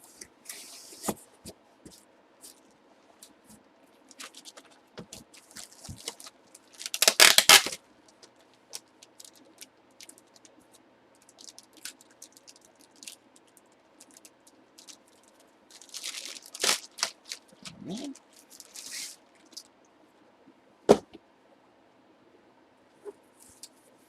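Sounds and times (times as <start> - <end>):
packaging rustling: 4.1 - 10.4, 14.0 - 19.6.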